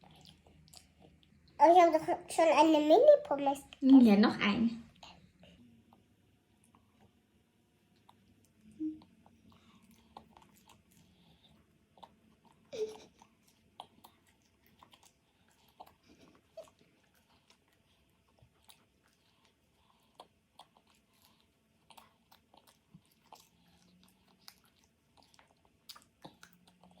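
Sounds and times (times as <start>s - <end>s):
person chewing fries: 0.0s - 1.5s, 7.9s - 27.0s
wet mouth clicks: 20.1s - 27.0s.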